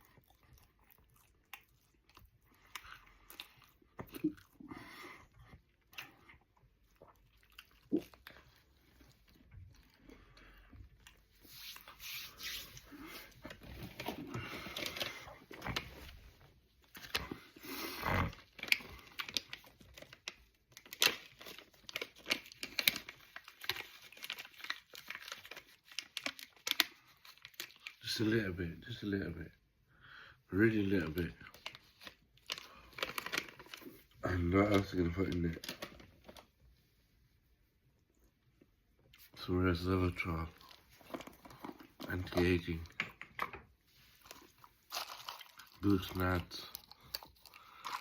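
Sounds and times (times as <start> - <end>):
food wrappers crinkling: 6.9 - 28.2, 30.9 - 36.5, 40.1 - 48.0
crunchy chewing: 44.2 - 46.0.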